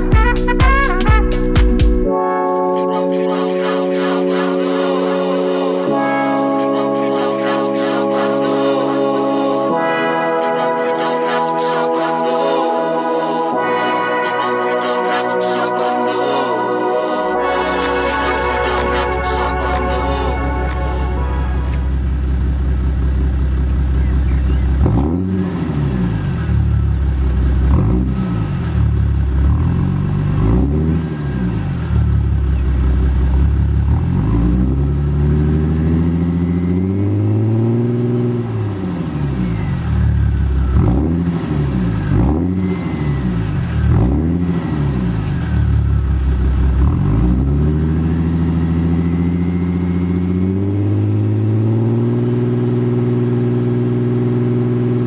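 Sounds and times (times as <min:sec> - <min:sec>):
diesel engine revving: 0:17.5 - 0:55.0.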